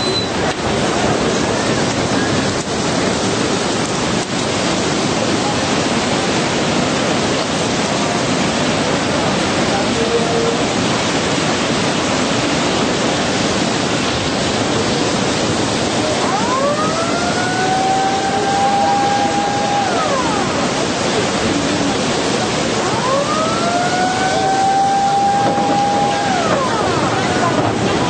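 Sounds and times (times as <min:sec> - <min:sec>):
loud rushing roar: 0:00.0 - 0:28.0
siren wailing: 0:16.2 - 0:21.0, 0:22.7 - 0:27.9.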